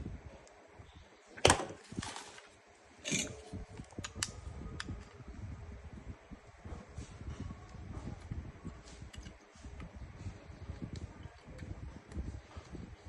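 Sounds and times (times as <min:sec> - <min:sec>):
rustling scrape: 0:01.8 - 0:03.6.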